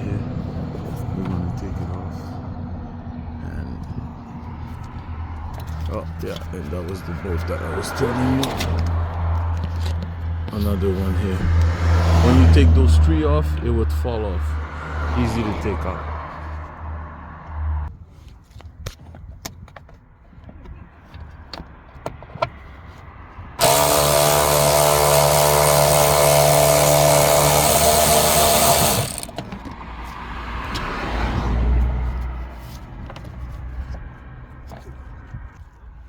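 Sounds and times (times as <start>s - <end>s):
tool handling clicks and knocks: 8.4s - 10.6s, 18.5s - 29.8s
electric power tool running: 23.6s - 29.4s.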